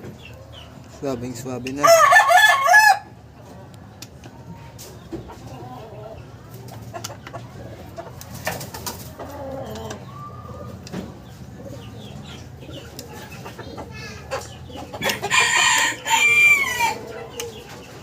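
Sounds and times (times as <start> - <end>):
faint chicken clucking: 0.0 - 18.0
rooster crowing: 1.8 - 3.2, 15.2 - 17.0.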